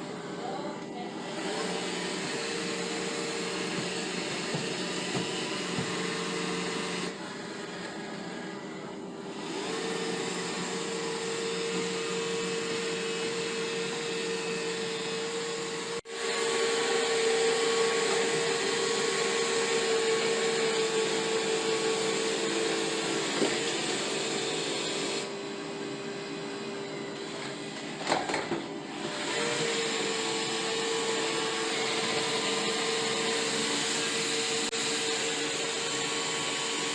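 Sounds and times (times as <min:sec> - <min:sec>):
robot vacuum motor hum: 0:00.5 - 0:23.7.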